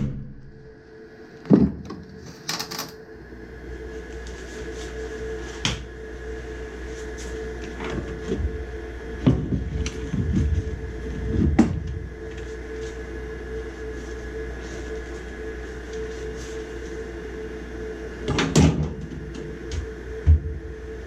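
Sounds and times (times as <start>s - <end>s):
mechanical hum: 0.0s - 21.0s
metal parts and tools clattering: 2.3s - 3.0s.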